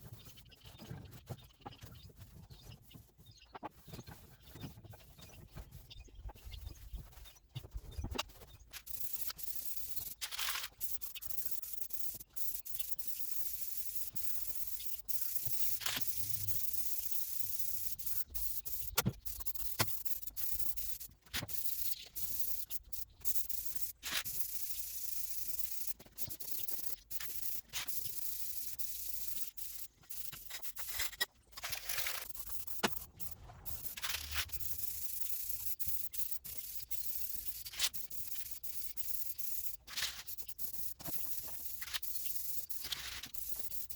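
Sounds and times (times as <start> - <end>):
spray paint can hissing: 8.9 - 43.9.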